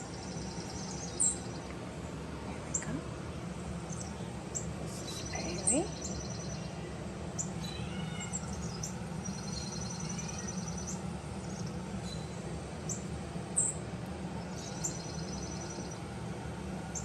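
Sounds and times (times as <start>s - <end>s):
small birds chirping: 0.0s - 16.2s
steady low hum: 0.0s - 17.0s
rapid high bird trill: 3.8s - 13.8s.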